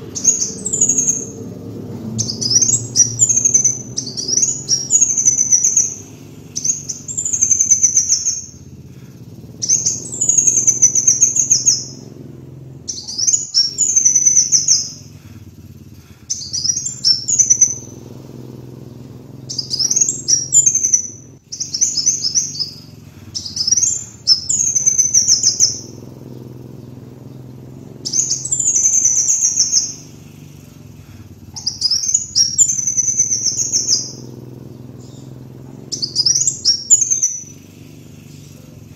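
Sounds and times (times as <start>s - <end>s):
faint low hum: 0.0s - 38.9s
sunbird twittering song: 0.0s - 38.9s.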